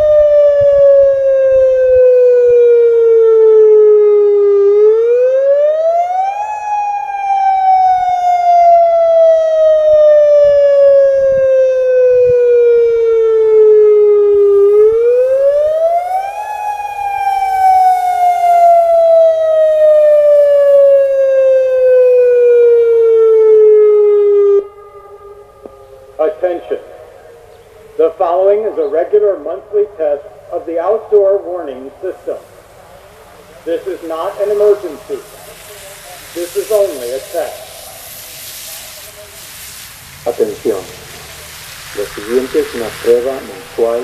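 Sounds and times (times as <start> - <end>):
warning siren sweeping tone: 0.0 - 30.4.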